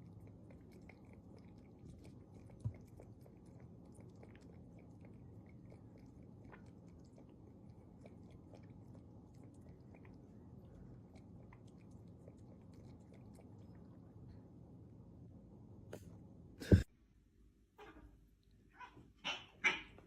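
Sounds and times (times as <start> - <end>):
chewing with crunching clicks: 0.0 - 13.9.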